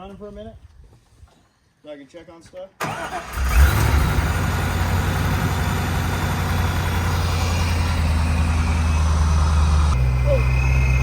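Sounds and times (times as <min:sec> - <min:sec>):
car engine idling: 0:02.9 - 0:11.0.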